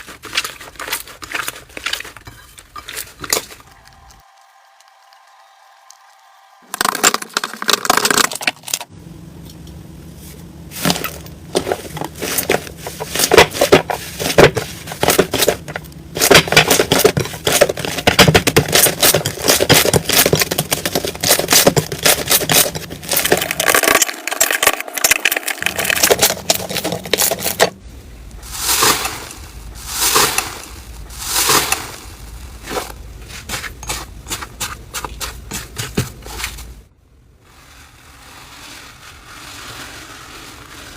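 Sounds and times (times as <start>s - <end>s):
slime squishing: 0.0s - 4.2s, 10.8s - 36.8s.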